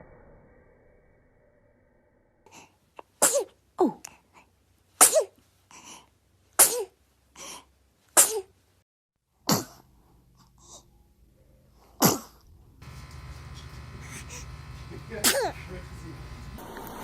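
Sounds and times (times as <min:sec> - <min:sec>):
babies sneezing: 0:03.2 - 0:04.0, 0:05.0 - 0:05.4, 0:06.6 - 0:07.0, 0:08.2 - 0:08.5, 0:12.0 - 0:12.4, 0:15.2 - 0:15.6
small breaths: 0:05.6 - 0:06.2, 0:07.3 - 0:07.8, 0:13.6 - 0:14.6.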